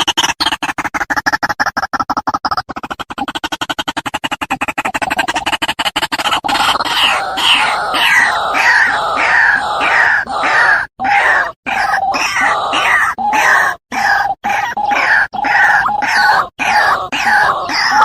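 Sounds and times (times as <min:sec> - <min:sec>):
clicking bird call pulses: 0:00.0 - 0:18.0
harsh bird croaking: 0:04.4 - 0:18.0.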